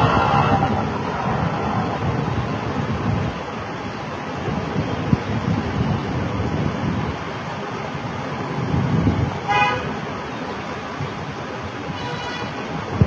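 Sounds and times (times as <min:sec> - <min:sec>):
road traffic noise: 0:00.0 - 0:13.0
vehicle horn toot: 0:09.5 - 0:09.9, 0:11.9 - 0:12.6.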